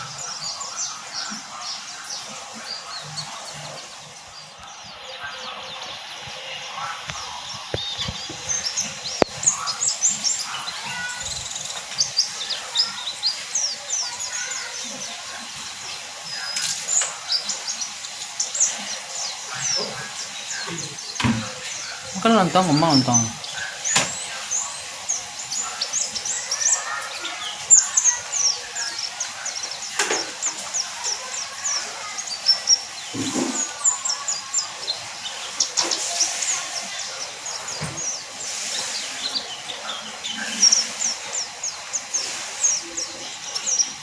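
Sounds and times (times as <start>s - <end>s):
bird chirping: 0.0s - 44.0s.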